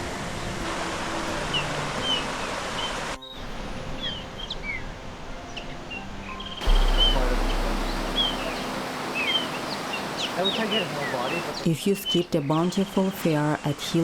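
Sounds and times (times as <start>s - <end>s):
low rumble: 6.6s - 9.3s.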